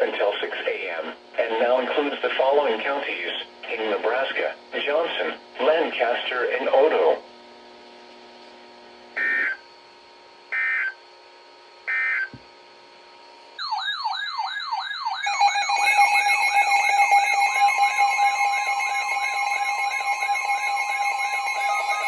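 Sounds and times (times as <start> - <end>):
electronic alarm falling tone: 9.2 - 9.6, 11.9 - 12.3, 13.6 - 22.0
steady electronic tones: 15.0 - 22.0
warbling data bursts: 15.2 - 22.0.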